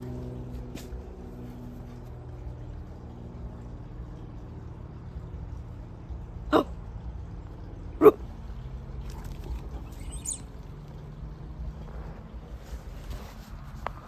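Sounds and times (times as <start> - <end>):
steady low hum: 0.0 - 14.0
dog barking: 8.0 - 8.2.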